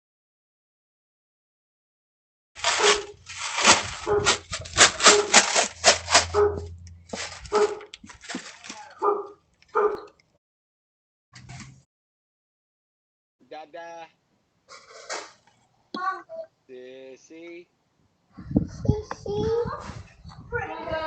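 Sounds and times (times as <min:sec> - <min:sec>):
dog barking: 0:02.7 - 0:03.2, 0:03.9 - 0:05.5, 0:06.1 - 0:07.9, 0:08.9 - 0:10.1.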